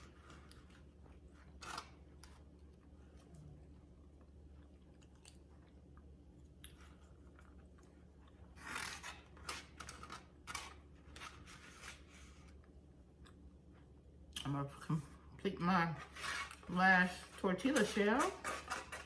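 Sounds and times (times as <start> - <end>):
crunchy chewing: 0.0 - 12.0.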